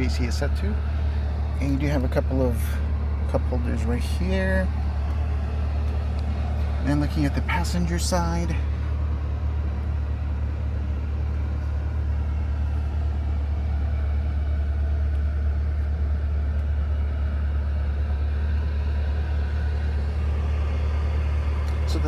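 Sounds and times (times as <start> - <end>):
car engine idling: 0.0 - 22.0.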